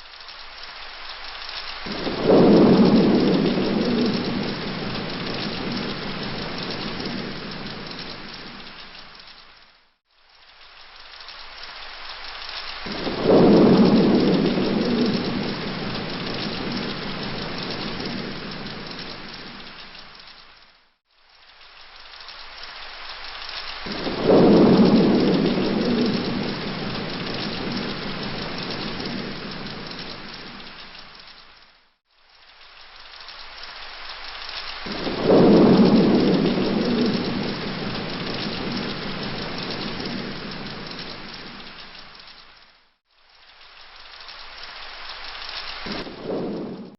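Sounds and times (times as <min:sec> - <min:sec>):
steady rain: 0:00.0 - 0:46.9
thunder rumbling: 0:01.5 - 0:09.6, 0:12.7 - 0:20.6, 0:23.6 - 0:31.6, 0:34.6 - 0:42.6, 0:45.5 - 0:46.9.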